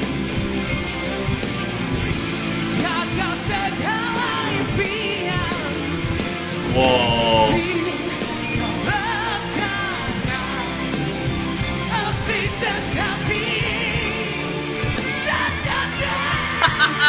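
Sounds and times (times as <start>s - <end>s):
rock band playing: 0.0s - 17.0s
person singing: 6.7s - 8.2s.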